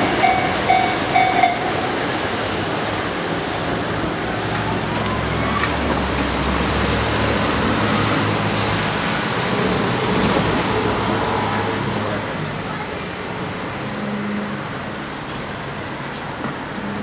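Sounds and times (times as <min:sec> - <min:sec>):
rushing hiss of passing vehicles: 0:01.7 - 0:17.0.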